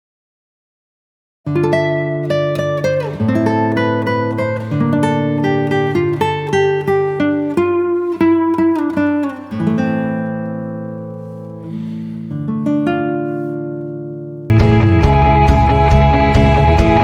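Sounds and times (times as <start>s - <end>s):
acoustic guitar music: 1.5s - 17.0s.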